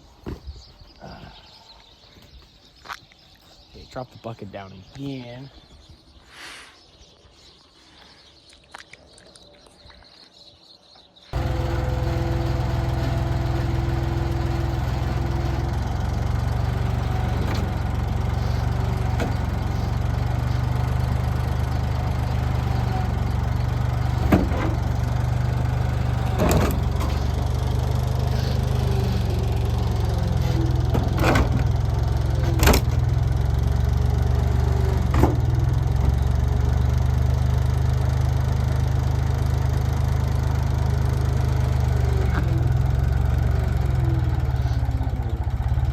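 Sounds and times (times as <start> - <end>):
bulldozer engine droning: 11.3 - 45.9.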